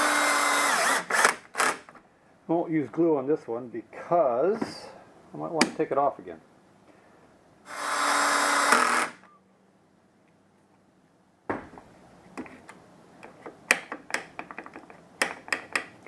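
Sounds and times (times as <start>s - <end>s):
power drill driving a screw: 0.0s - 1.9s, 7.7s - 9.3s
parts being handled: 11.5s - 16.0s.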